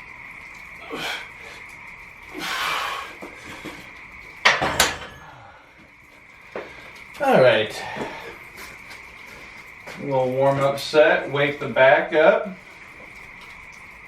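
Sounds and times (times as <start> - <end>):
frogs calling: 0.0 - 14.0
rain falling: 0.0 - 14.0
metal weight plates clanking: 4.5 - 5.4.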